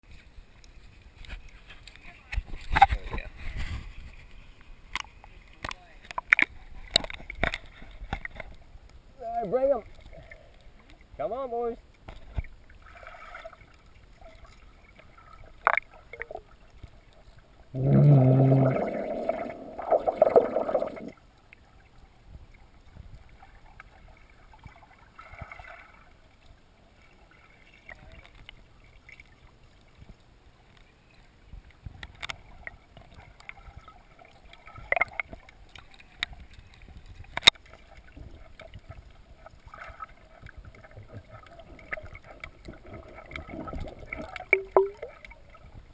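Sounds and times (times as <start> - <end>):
water gurgling and sloshing: 0.0 - 45.9
low voice-like sound: 17.8 - 18.9.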